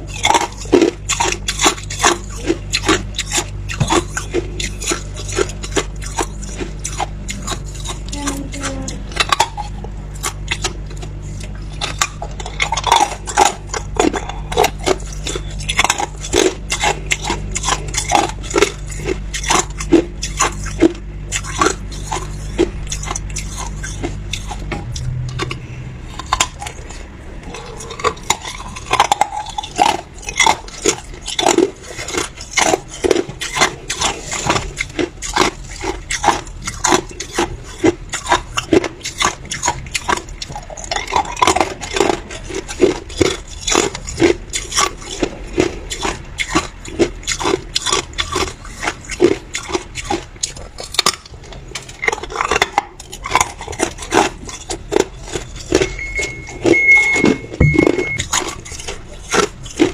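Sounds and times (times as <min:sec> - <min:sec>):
person chewing ice: 0:00.0 - 0:59.9.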